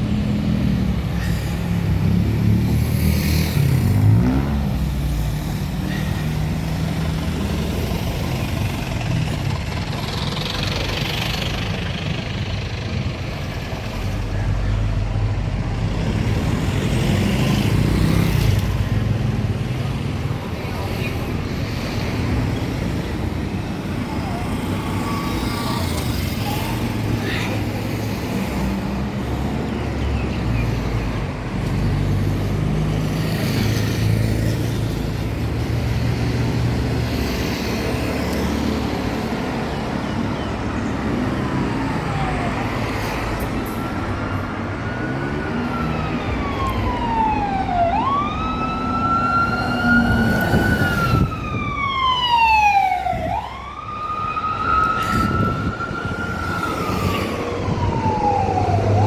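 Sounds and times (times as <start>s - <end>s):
road traffic rumble: 0.0s - 59.0s
emergency vehicle siren wailing: 21.7s - 31.6s, 32.8s - 59.0s.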